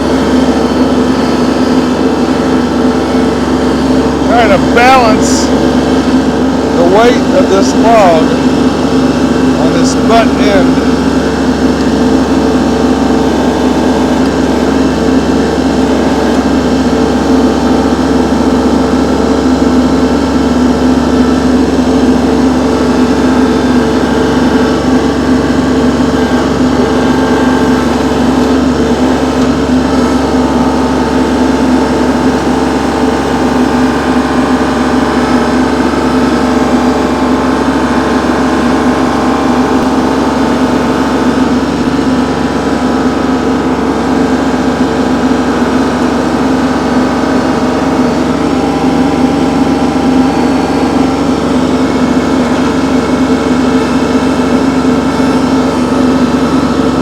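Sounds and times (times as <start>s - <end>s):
tractor diesel engine running: 0.0s - 57.0s.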